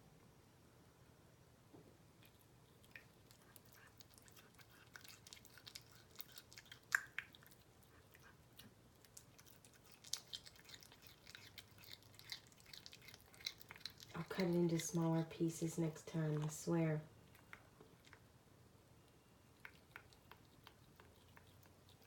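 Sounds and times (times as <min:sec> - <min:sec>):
cat chewing raw meat: 0:02.1 - 0:22.0.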